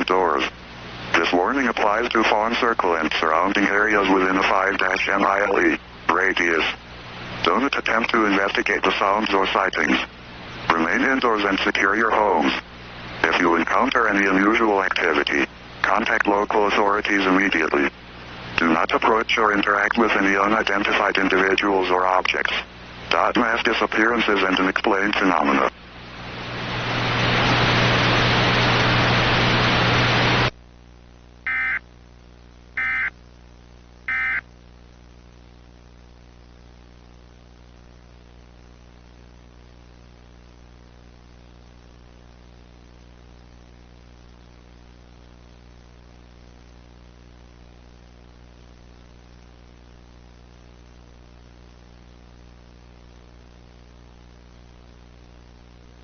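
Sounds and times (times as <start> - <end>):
loud static: 0.0 - 56.0
steady low hum: 0.0 - 56.0
data tone bursts: 31.5 - 31.8, 32.8 - 33.1, 34.1 - 34.4.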